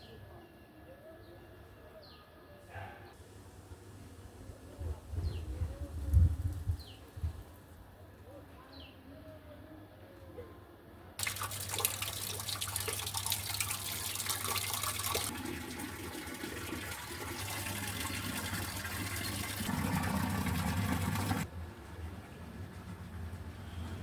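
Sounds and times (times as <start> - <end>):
water running: 11.2 - 21.5.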